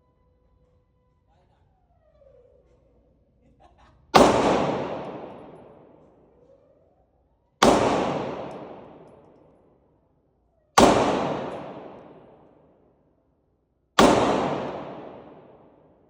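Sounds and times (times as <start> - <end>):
echoing gunshots: 4.2 - 6.1, 7.6 - 9.4, 10.8 - 12.7, 14.0 - 16.0.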